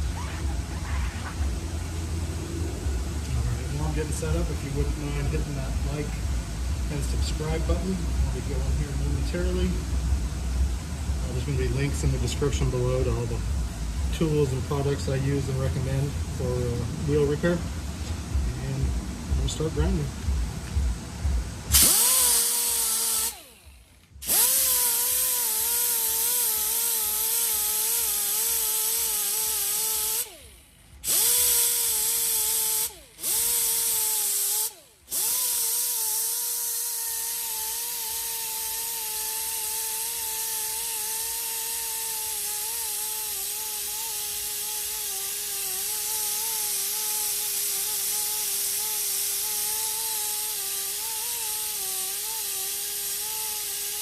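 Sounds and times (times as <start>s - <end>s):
power tool grinding wheel rim: 21.7s - 54.0s.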